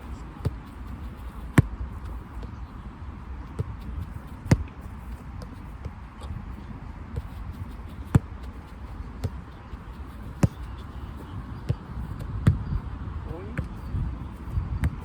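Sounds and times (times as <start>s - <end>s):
football thudding: 3.4s - 6.1s, 7.1s - 8.5s, 10.2s - 12.6s, 14.4s - 15.0s.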